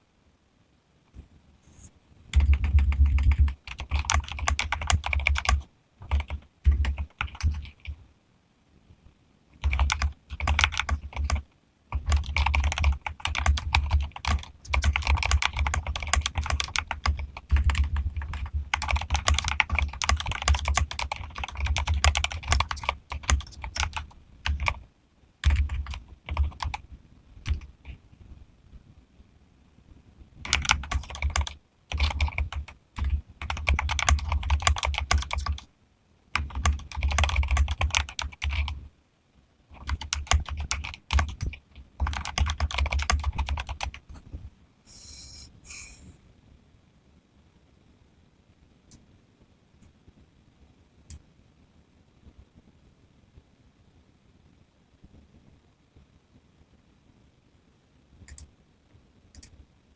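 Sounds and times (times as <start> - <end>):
mechanical keyboard typing: 2.3 - 8.0, 9.6 - 24.8, 25.4 - 26.8, 27.4 - 28.0, 30.4 - 35.7, 36.4 - 38.8, 39.7 - 44.0, 58.3 - 58.5, 59.3 - 59.5.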